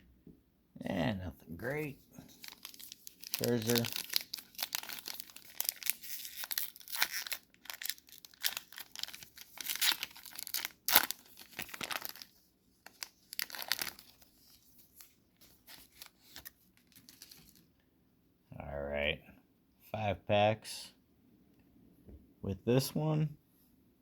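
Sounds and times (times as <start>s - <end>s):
card pack wrapper crinkling and tearing: 2.3s - 17.7s.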